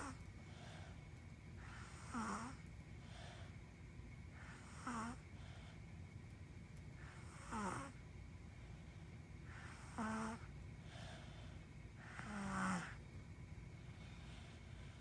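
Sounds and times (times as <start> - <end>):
person snoring: 9.8 - 10.4, 12.2 - 13.0.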